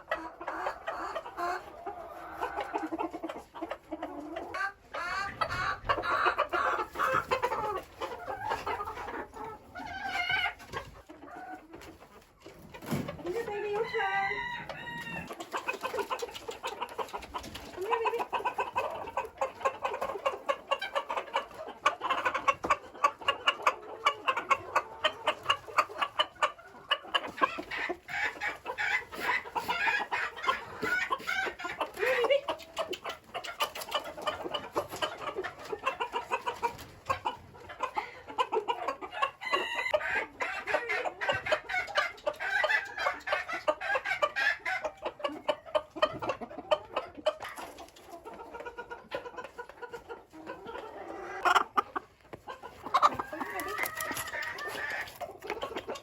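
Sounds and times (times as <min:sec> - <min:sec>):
chickens clucking: 0:00.0 - 0:56.0
rooster crowing: 0:13.8 - 0:15.3.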